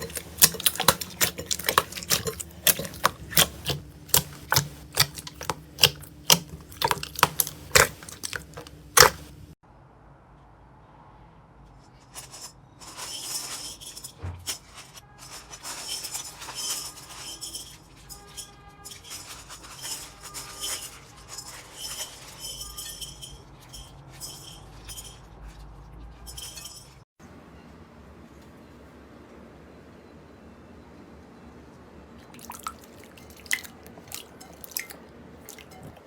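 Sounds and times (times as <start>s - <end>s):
slime crackling and popping: 0.0s - 9.3s.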